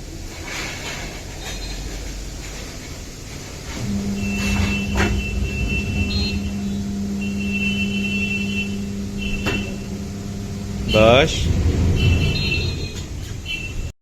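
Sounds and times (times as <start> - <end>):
tyre changer motor humming: 3.0 - 13.9
thin high squeaks: 3.8 - 13.9.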